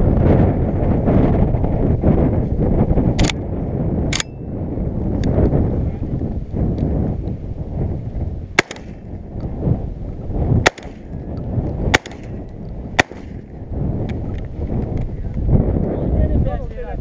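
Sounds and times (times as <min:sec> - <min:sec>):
shotgun shots: 0:08.6 - 0:09.2, 0:10.6 - 0:11.2, 0:11.9 - 0:13.6.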